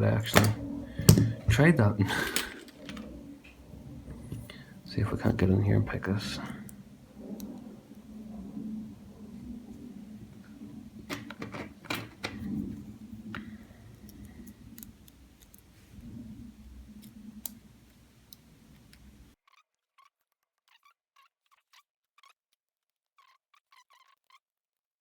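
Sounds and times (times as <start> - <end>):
low rumble of lock handling: 0.0 - 19.3
lock pick clicks and scrapes: 0.2 - 1.5, 2.1 - 4.7, 11.0 - 15.8.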